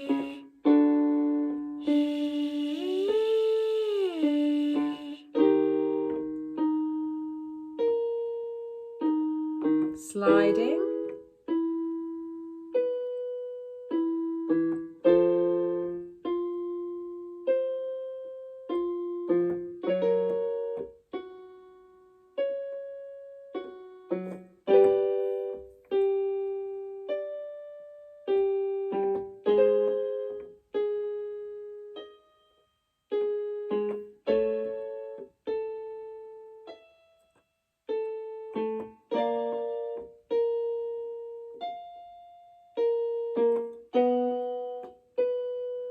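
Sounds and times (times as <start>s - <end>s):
piano notes and chords: 0.0s - 45.9s.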